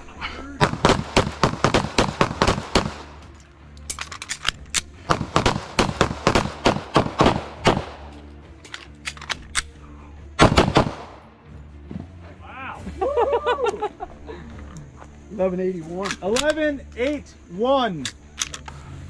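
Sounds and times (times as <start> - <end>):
pistols firing: 0.6 - 8.2, 10.4 - 11.2.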